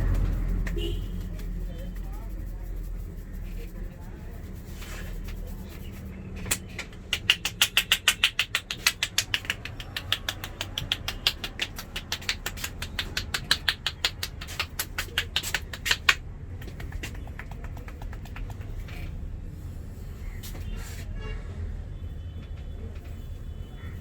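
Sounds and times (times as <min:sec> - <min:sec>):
quick hand slaps on head: 0:06.4 - 0:19.0.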